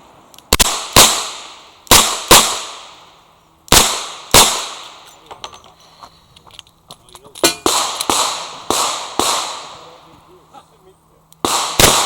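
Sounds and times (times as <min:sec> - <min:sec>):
revolver shots with ringing echo: 0:07.5 - 0:10.0, 0:11.4 - 0:12.0.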